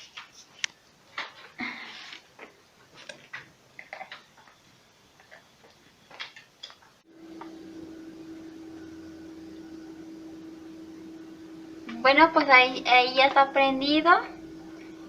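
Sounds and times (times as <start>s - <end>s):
refrigerator humming: 7.1s - 15.0s.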